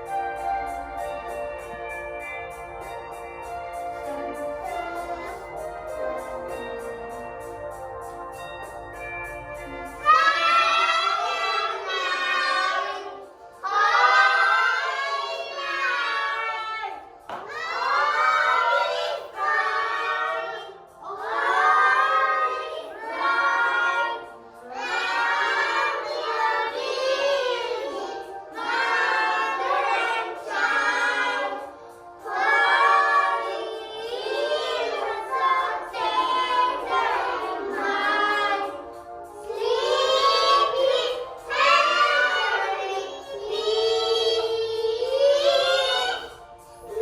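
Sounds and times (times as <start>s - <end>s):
children singing together: 0.0s - 1.8s, 2.8s - 7.2s, 9.6s - 47.0s.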